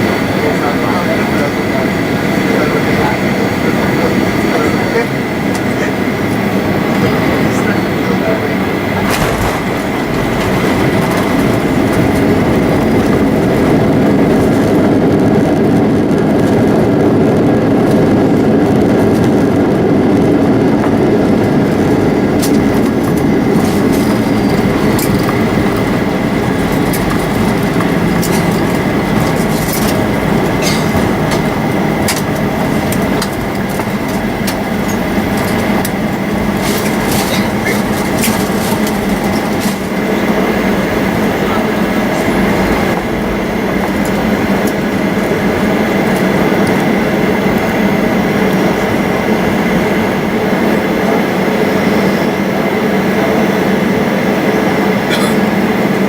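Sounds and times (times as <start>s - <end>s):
airliner cabin engine rumble: 0.0s - 56.0s
constant high whine: 0.0s - 56.0s.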